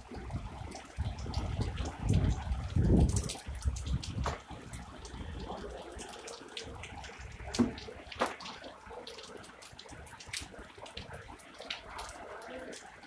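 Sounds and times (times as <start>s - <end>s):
rain falling: 0.0s - 13.0s
raindrop hits: 0.0s - 13.0s.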